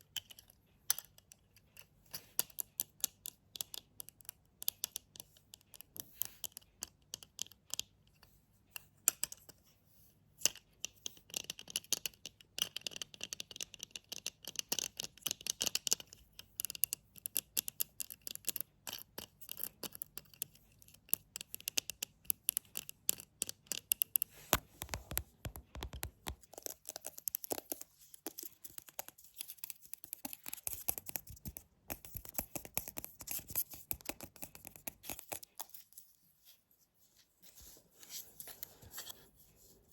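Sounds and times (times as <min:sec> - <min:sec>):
tapping and scratching: 0:21.0 - 0:36.1.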